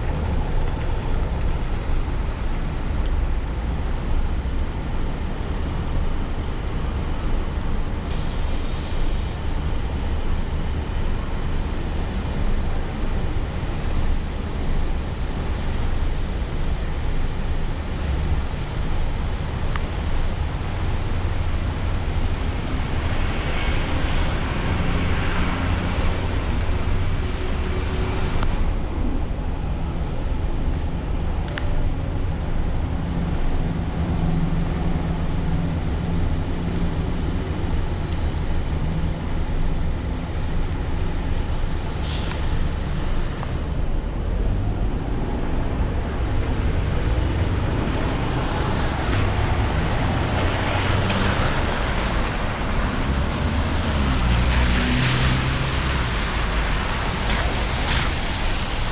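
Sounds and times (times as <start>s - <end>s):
car engine and road noise: 0.0s - 58.9s
tyre hiss: 8.1s - 9.4s, 41.9s - 43.6s
short sharp hiss: 42.0s - 43.0s.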